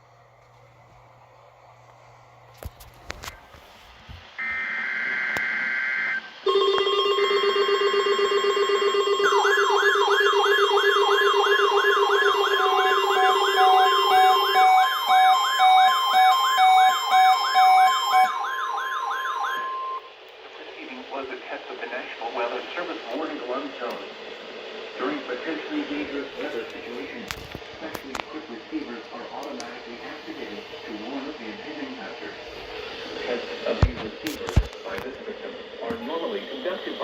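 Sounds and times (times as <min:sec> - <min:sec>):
low buzzer: 0:04.4 - 0:18.4
loud steady alarm tone: 0:04.4 - 0:20.1
rising and falling siren warble: 0:07.6 - 0:20.1
pulsing beeps: 0:08.8 - 0:18.3
buzzy digital data tones: 0:11.5 - 0:15.5.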